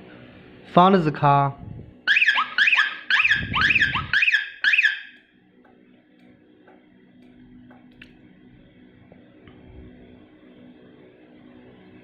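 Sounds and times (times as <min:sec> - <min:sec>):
faint steady hum: 0:00.0 - 0:12.0
car alarm chirps: 0:02.1 - 0:05.2.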